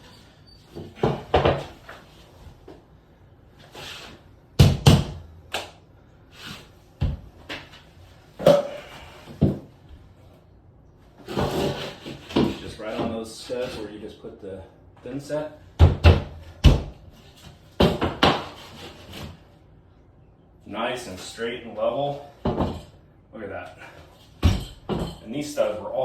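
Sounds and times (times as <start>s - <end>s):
drywall board knocks and thumps: 1.0s - 1.9s, 4.6s - 5.3s, 15.8s - 17.0s, 17.8s - 19.2s, 22.4s - 22.9s.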